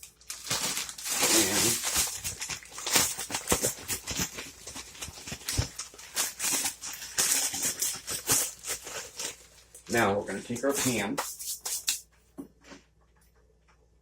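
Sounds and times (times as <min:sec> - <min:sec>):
plastic bag shaken and crinkling: 0:00.0 - 0:11.6.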